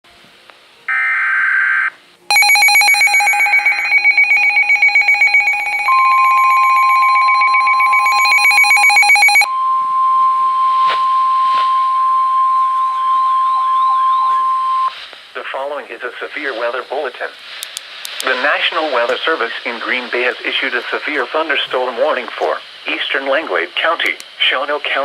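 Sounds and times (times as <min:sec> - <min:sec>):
electronic tone: 0:00.9 - 0:14.9
fast pulsing beeps: 0:02.3 - 0:09.5
steady warning alert tone: 0:02.3 - 0:09.5
warbling alarm: 0:02.3 - 0:14.9.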